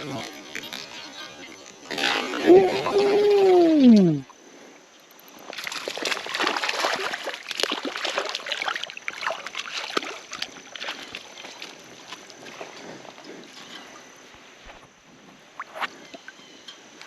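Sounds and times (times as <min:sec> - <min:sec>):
fish thrashing in water: 0:05.5 - 0:14.1.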